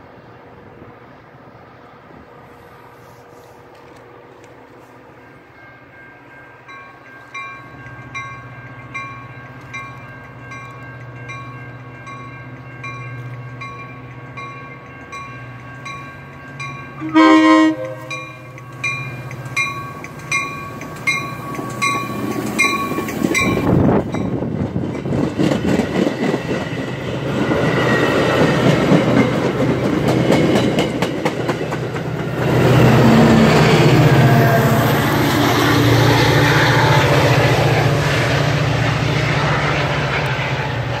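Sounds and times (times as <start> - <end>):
train low drone: 0.0 - 41.0
bell ringing: 5.3 - 24.4
train wheels clacking on rails: 6.8 - 41.0.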